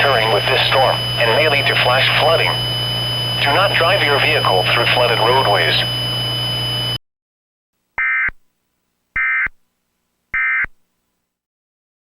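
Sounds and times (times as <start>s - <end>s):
shrill digital data screeches: 0.1s - 6.9s.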